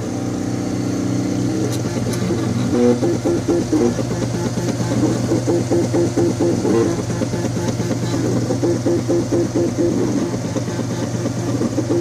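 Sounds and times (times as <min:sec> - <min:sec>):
steady low hum: 0:00.0 - 0:12.0
stepper motors whining: 0:00.0 - 0:12.0.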